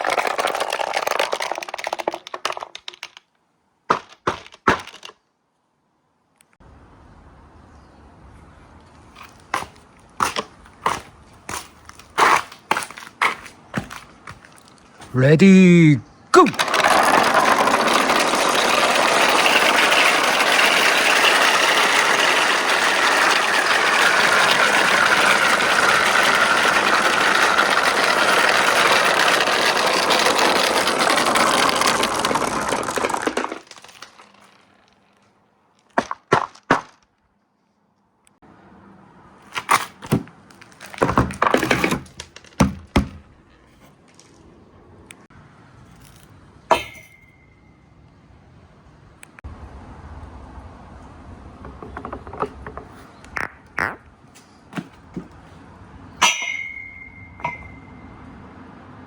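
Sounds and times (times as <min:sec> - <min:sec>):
marbles knocking together: 0:00.0 - 0:03.2, 0:16.4 - 0:35.0, 0:51.6 - 0:54.0
marbles rolling rattling rumble: 0:00.0 - 0:03.2, 0:16.4 - 0:35.2.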